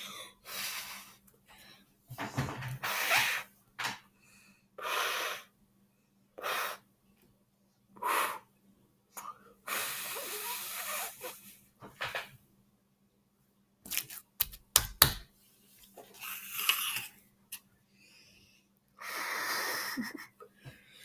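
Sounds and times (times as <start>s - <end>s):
slime being squished by hand: 13.9s - 15.2s.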